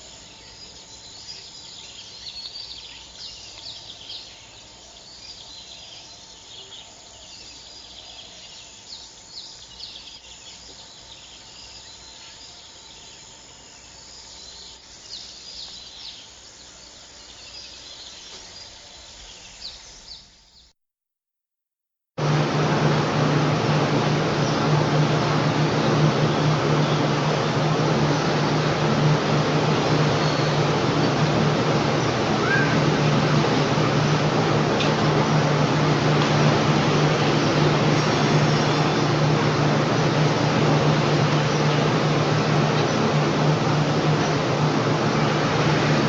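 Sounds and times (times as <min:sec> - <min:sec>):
faint background hum: 0:22.2 - 0:46.0
loud rushing noise with deep hum: 0:22.2 - 0:46.0
small birds chirping: 0:23.6 - 0:46.0.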